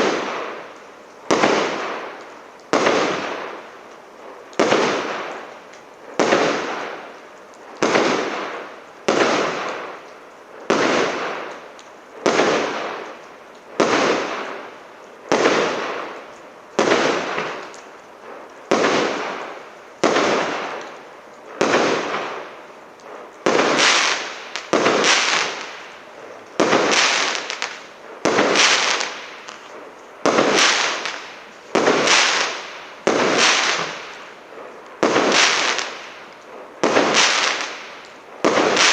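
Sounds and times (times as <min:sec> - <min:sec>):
firework battery shots: 0:18.7 - 0:20.9, 0:21.6 - 0:22.5, 0:23.4 - 0:25.9, 0:26.6 - 0:34.4, 0:35.0 - 0:38.9.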